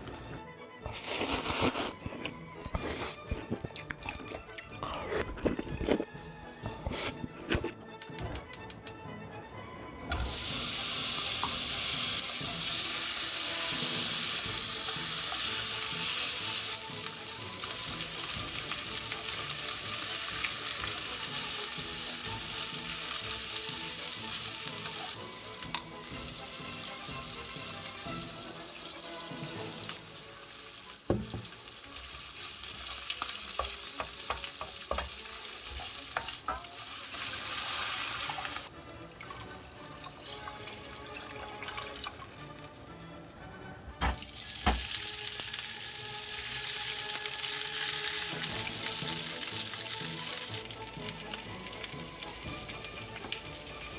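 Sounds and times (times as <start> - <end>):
utensil clicking on pan: 8.0 - 9.0, 32.4 - 36.9
food sizzling in a pan: 10.1 - 38.7, 44.0 - 53.9.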